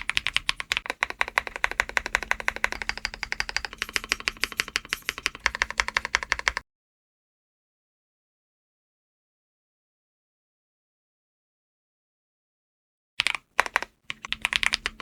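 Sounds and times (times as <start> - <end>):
mechanical keyboard typing: 0.0 - 6.6, 13.2 - 15.0.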